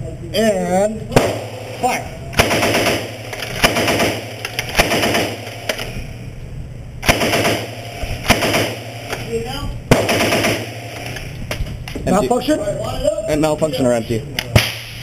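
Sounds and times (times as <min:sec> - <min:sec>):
gunshot echo: 0:01.1 - 0:06.0, 0:07.0 - 0:09.3, 0:09.9 - 0:11.4, 0:14.6 - 0:15.0
submachine gun firing: 0:01.2 - 0:06.0, 0:07.0 - 0:11.3.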